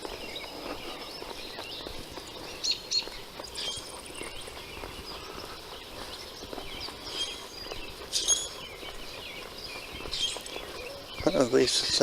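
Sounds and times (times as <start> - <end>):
songbirds chirping: 0.0 - 12.0
loud short bird chirps: 8.1 - 8.6.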